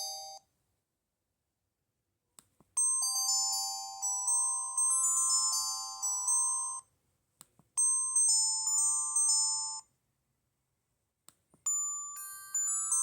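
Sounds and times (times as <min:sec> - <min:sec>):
mobile phone ringtone melodies: 0:02.8 - 0:06.8, 0:07.8 - 0:09.8, 0:11.7 - 0:13.0.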